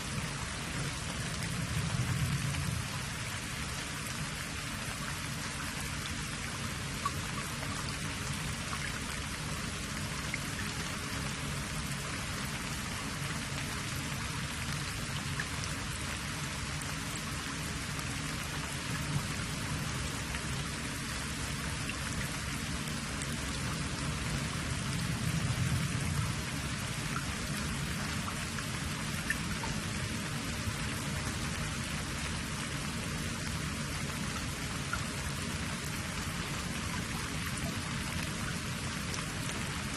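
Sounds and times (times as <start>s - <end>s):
rain-like hiss: 0.0s - 39.9s
faint light ticks: 7.0s - 7.8s.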